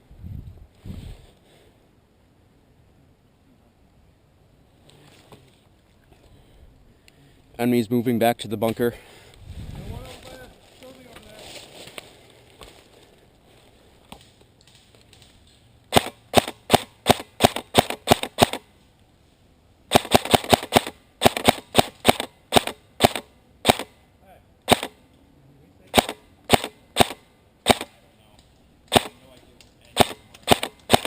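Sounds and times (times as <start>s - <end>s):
airsoft rifle shots: 15.9s - 18.7s, 19.9s - 24.0s, 24.7s - 25.0s, 25.9s - 28.0s, 28.9s - 31.0s.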